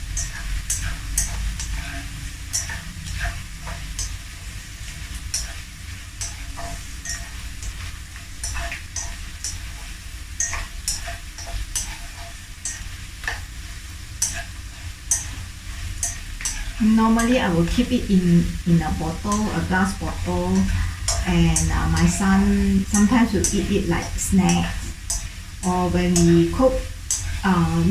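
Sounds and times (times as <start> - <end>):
anchovies frying in hot oil: 0.0 - 27.9.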